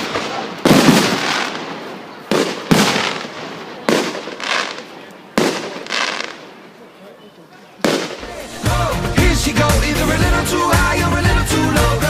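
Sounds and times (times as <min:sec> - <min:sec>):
firework shells bursting: 0:00.0 - 0:06.6.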